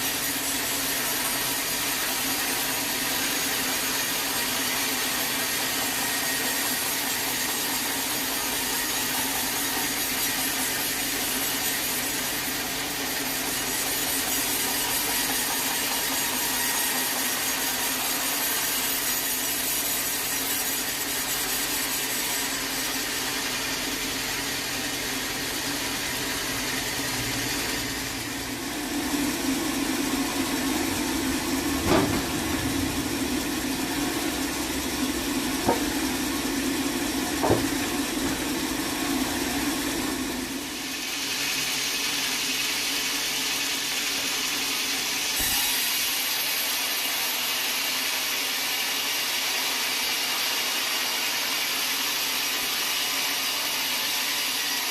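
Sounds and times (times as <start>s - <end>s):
sawmill machinery running: 0.0s - 54.9s
loud low hum: 28.5s - 40.4s
sharp knocks: 31.8s - 32.5s, 35.6s - 36.2s, 37.4s - 38.5s.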